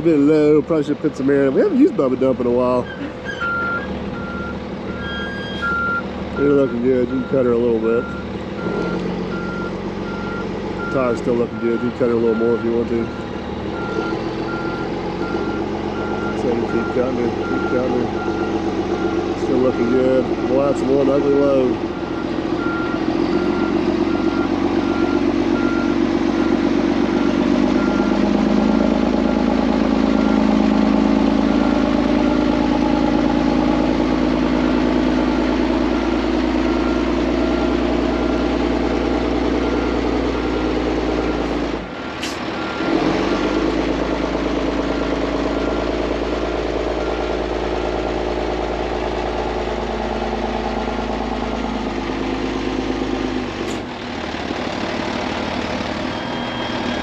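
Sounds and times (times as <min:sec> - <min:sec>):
heavy diesel engine running: 0:00.0 - 0:57.0
backup alarm beeping: 0:03.4 - 0:20.6, 0:22.0 - 0:28.4, 0:56.0 - 0:57.0.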